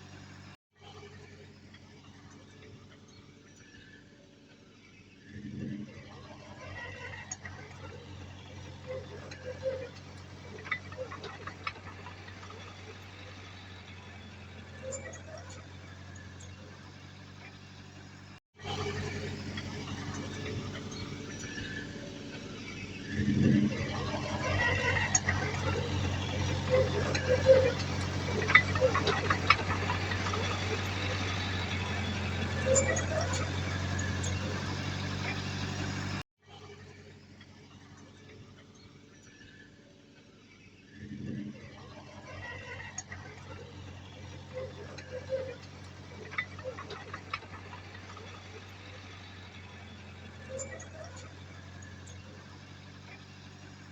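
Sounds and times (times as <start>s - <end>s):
diesel engine running: 0.0s - 53.9s
clicks and clanks: 23.3s - 36.2s.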